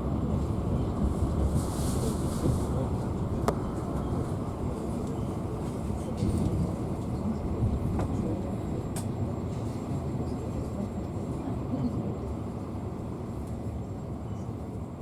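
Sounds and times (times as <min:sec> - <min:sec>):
train wheels rumbling on rails: 0:00.0 - 0:11.2.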